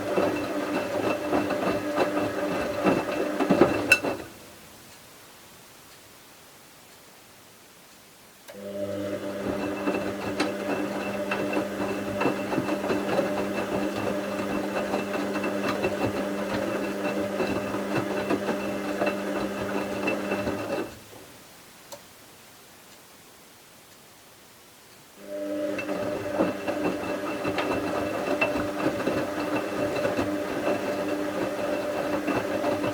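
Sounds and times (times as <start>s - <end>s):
washing machine motor hum: 0.0s - 4.4s, 8.5s - 21.1s, 25.2s - 32.9s
faint tick: 6.8s - 7.1s, 7.8s - 8.6s, 21.9s - 22.1s, 22.8s - 23.1s
drum clicking clatter: 25.8s - 32.9s.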